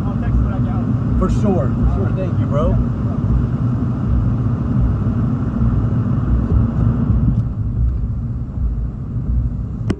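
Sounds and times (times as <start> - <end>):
strong wind buffeting microphone: 3.2 - 9.9.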